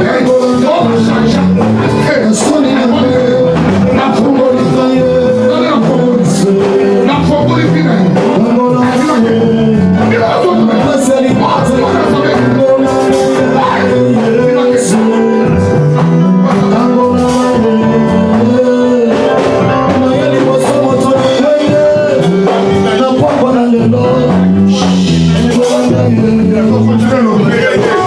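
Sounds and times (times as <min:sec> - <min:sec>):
band music with bass guitar drums: 0:00.0 - 0:28.0
person singing: 0:00.0 - 0:28.0.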